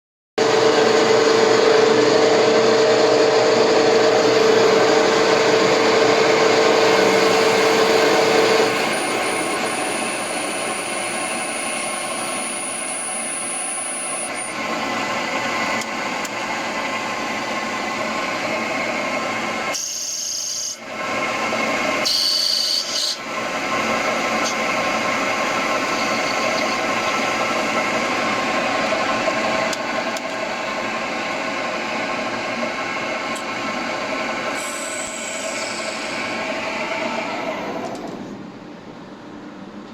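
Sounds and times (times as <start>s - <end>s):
high whine: 0.4s - 19.2s
steady hum: 0.4s - 19.7s
lathe machining noise: 0.4s - 38.2s.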